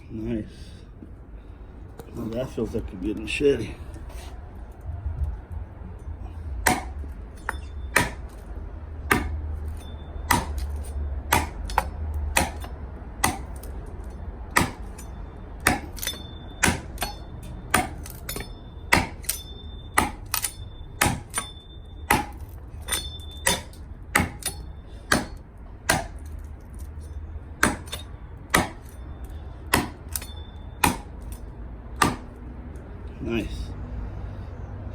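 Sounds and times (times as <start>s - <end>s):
machete chopping into wood: 6.6s - 7.0s, 8.0s - 8.2s, 9.1s - 9.4s, 10.3s - 13.6s, 14.6s - 14.9s, 15.6s - 19.4s, 20.0s - 21.5s, 22.1s - 26.2s, 27.6s - 29.0s, 29.7s - 31.1s, 32.0s - 32.3s.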